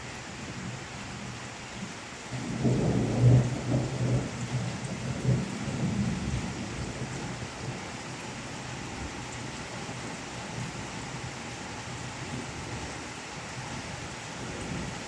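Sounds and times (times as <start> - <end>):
rain hissing: 0.0 - 15.0
thunder rumbling: 2.3 - 9.2.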